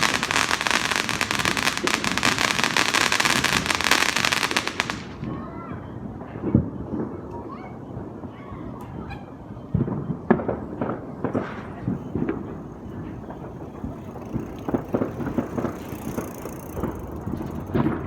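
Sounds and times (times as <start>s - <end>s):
fireworks bangs and pops: 0.0s - 5.3s, 9.8s - 16.2s.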